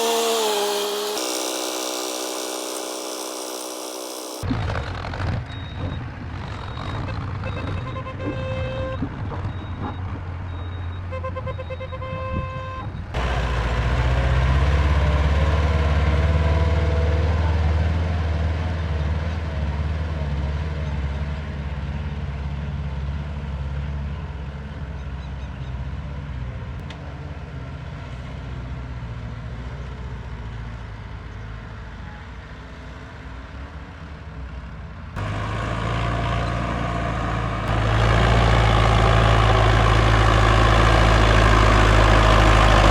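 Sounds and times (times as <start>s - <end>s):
diesel machinery engine running: 0.0s - 4.5s, 13.2s - 17.6s, 35.2s - 42.9s.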